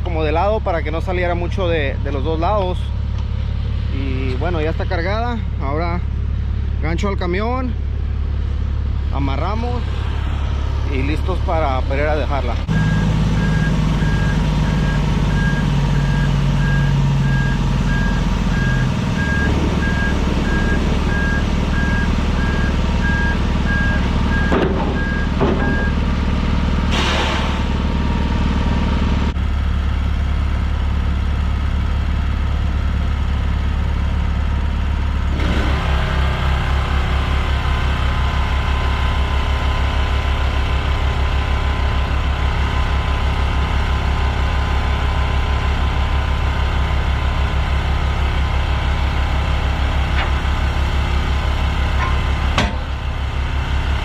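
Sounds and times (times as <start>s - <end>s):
truck diesel engine running: 0.0s - 54.0s
reverse alarm beeping: 12.7s - 26.0s
short air hiss: 26.9s - 27.7s.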